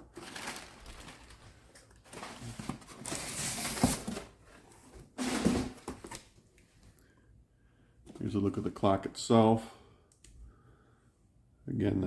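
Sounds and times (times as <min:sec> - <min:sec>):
rustling of parts and packaging: 0:00.0 - 0:07.0.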